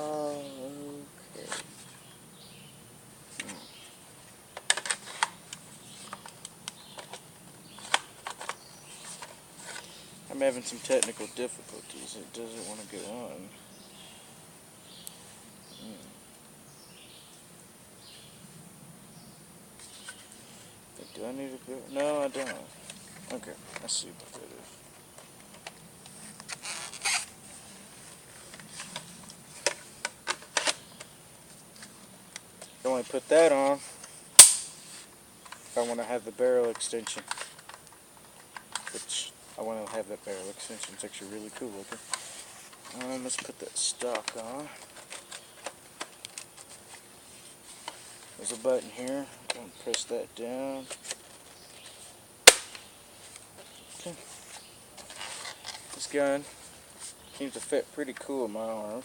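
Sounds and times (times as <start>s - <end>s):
scraping rustle: 3.3s - 13.6s, 21.4s - 52.2s, 53.1s - 59.0s
plastic parts clicking: 7.8s - 8.6s, 36.7s - 39.0s.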